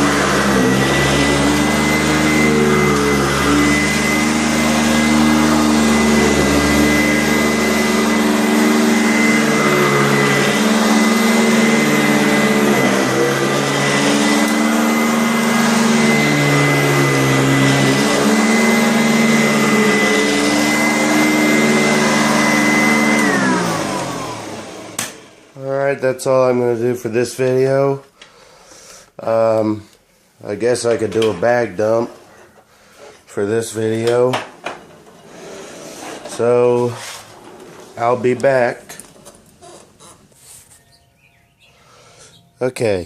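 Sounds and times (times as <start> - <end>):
vacuum motor winding down: 0.0 - 25.6
vacuum cleaner running: 0.0 - 27.9, 30.6 - 42.5.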